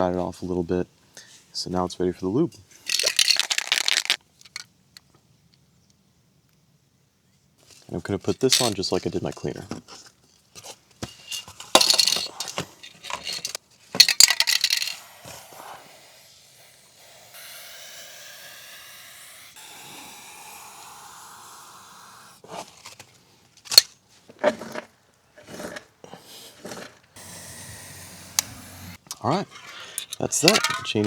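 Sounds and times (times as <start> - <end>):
aerosol spray hissing: 14.9 - 22.4, 27.2 - 29.0.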